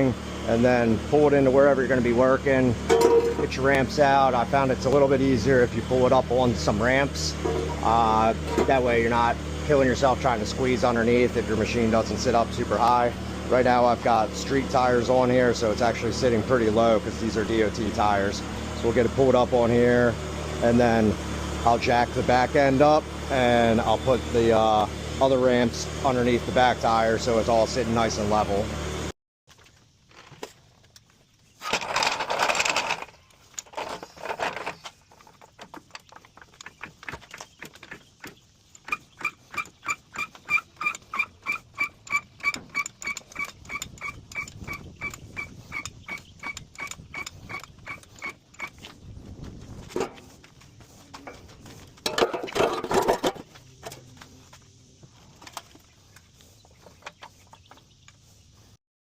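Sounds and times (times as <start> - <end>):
clattering and knocking: 7.4 - 8.8, 52.0 - 53.5
floor jack squeaky clicks: 29.6 - 49.0.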